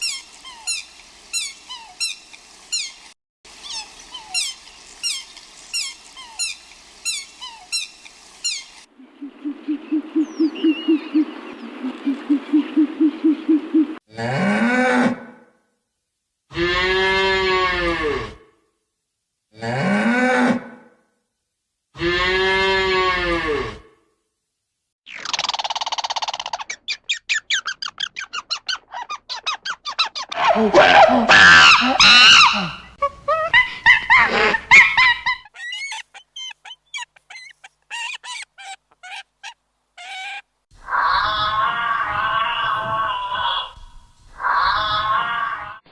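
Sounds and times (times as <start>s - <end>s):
domestic fowl calling: 3.5s - 14.0s, 33.6s - 45.8s.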